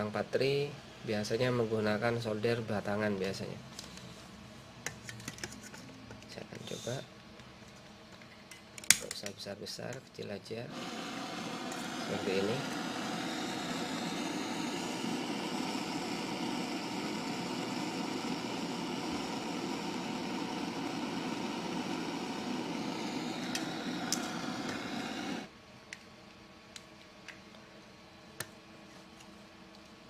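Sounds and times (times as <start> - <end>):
gas torch hissing: 6.6 - 7.1, 10.6 - 25.5.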